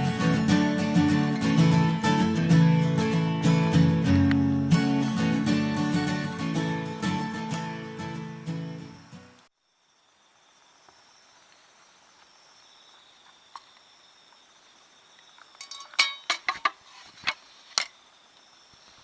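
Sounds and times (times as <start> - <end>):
night insects trilling: 0.0 - 4.1, 4.8 - 19.0
sharp clinks and knocks: 15.6 - 16.8.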